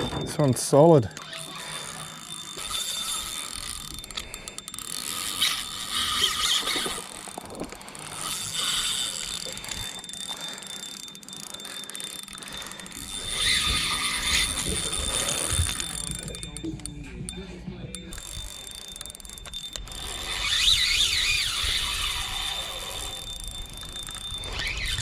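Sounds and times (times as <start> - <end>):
fishing reel clicking and whirring: 0.0 - 25.0.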